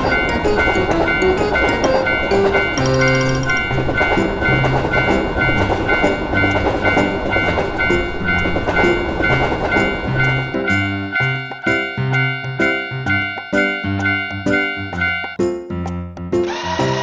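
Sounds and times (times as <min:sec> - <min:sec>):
train rumbling and clattering: 0:00.0 - 0:13.3
railroad crossing alarm dinging: 0:00.0 - 0:15.5
background music: 0:00.0 - 0:17.0.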